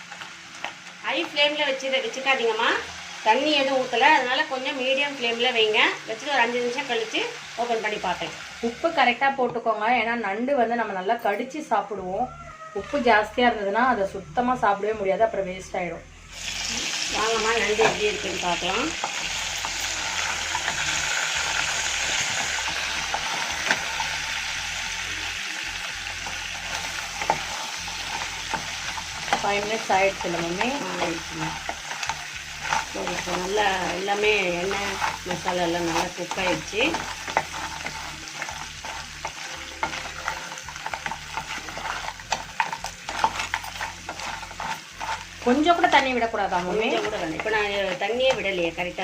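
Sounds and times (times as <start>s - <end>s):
crab frying in oil: 0.0s - 9.2s, 16.3s - 49.0s
spoon scraping pan: 16.4s - 49.0s.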